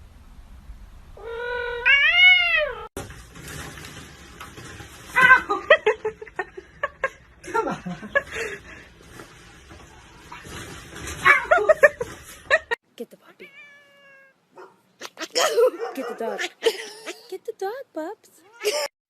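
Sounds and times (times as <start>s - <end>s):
cat meowing: 1.2s - 2.9s, 13.4s - 14.4s, 18.4s - 18.9s.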